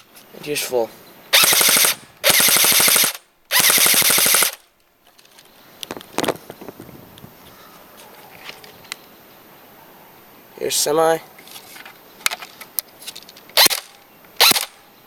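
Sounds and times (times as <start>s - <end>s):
airsoft gun firing bursts: 1.4s - 4.6s, 13.6s - 14.7s.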